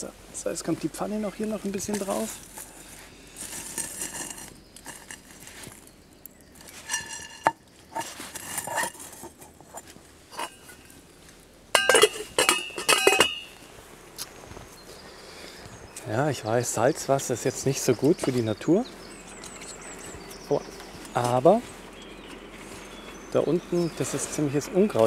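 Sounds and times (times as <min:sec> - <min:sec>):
pots knocking and clinking: 0:06.8 - 0:08.1, 0:11.7 - 0:13.6.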